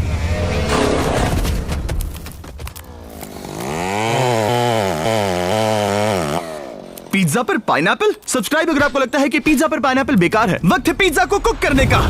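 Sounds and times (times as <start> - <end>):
power tool running: 2.8 - 7.3.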